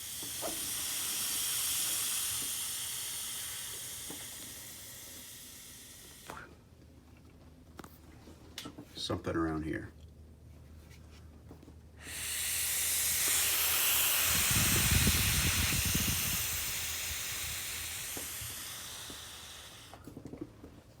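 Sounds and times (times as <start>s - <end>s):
air hissing from leak: 0.0s - 6.6s, 12.0s - 20.2s.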